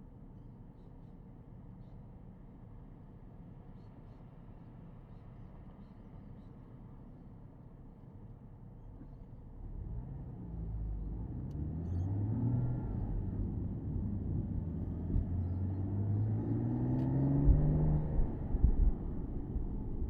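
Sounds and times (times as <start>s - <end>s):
car engine accelerating: 9.7s - 20.0s.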